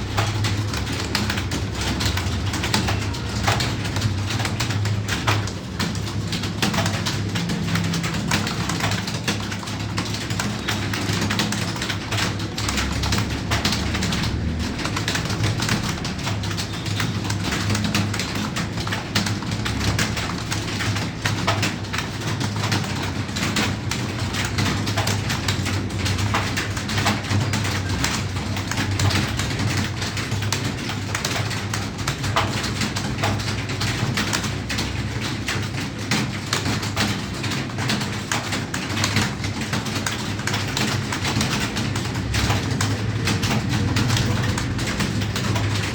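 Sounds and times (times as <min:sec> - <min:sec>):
keyboard typing clicks: 0:00.0 - 0:45.9.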